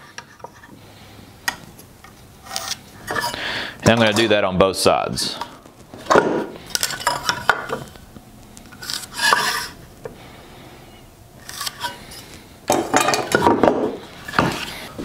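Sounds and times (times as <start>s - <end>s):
tool scraping on wood: 2.4s - 4.3s, 8.8s - 9.8s, 11.4s - 12.4s, 13.8s - 15.0s.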